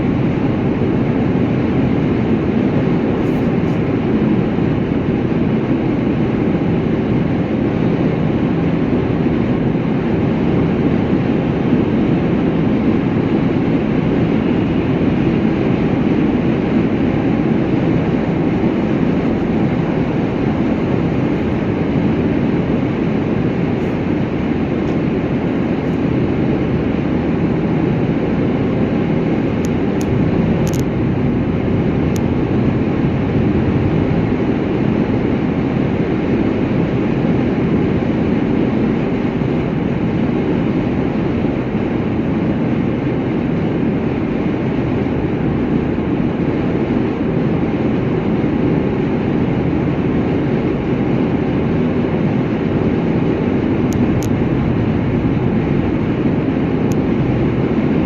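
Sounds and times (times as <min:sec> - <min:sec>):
vehicle road and engine noise: 0:00.0 - 0:58.0.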